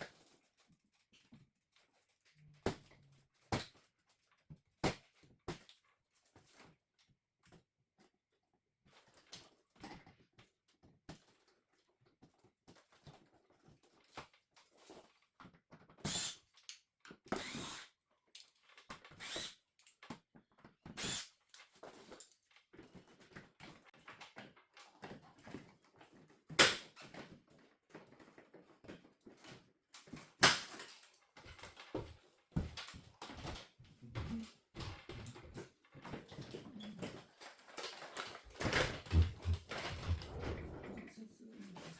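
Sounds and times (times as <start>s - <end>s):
hard objects clicking and knocking: 28.0s - 40.9s.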